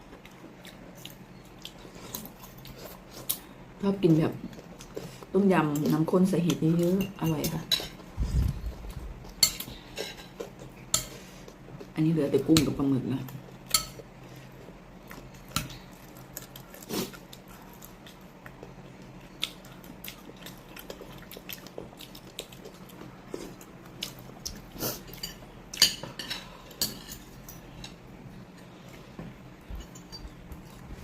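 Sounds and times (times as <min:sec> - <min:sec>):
cutlery clinking against plates: 0:13.7 - 0:14.0, 0:25.0 - 0:28.0.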